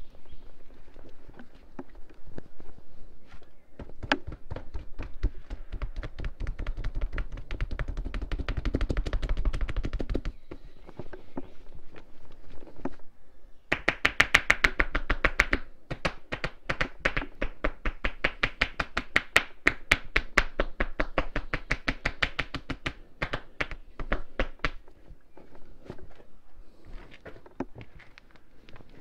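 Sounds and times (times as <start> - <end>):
hands striking body rapidly: 3.8 - 10.4, 13.7 - 24.8.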